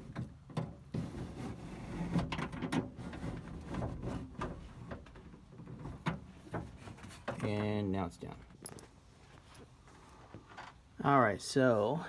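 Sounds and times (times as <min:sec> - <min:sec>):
window glass scraping and grinding: 0:00.0 - 0:07.5.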